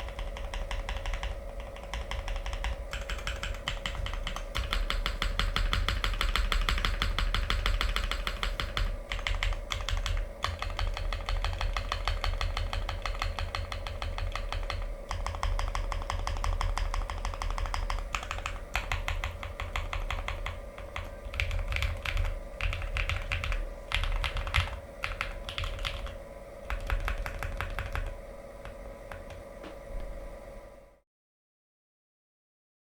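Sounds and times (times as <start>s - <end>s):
mechanical keyboard clacking: 0.0s - 29.4s.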